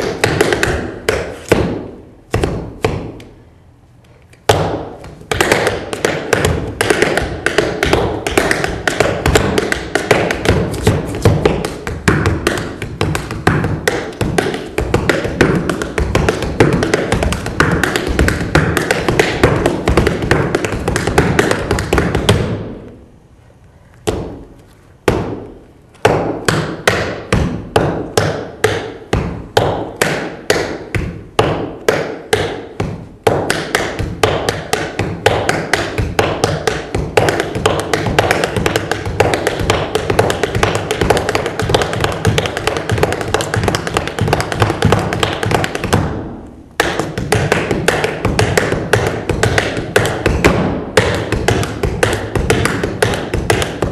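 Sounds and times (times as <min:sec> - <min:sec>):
tap shoes on hard floor: 0:00.0 - 0:03.4, 0:04.3 - 0:23.0, 0:24.1 - 0:53.9.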